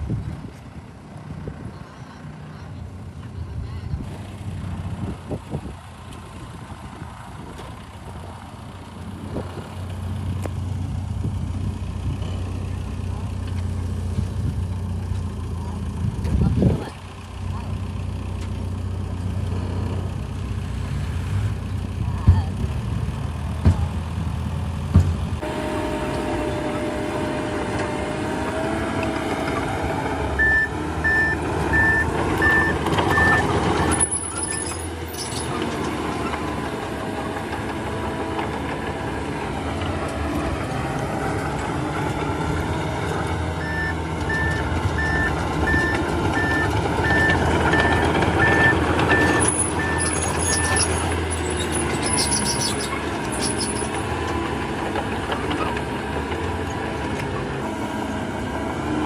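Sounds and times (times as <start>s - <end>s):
heavy machine engine running: 0.0s - 59.0s
reversing alarm beeping: 30.4s - 34.8s, 43.6s - 51.0s.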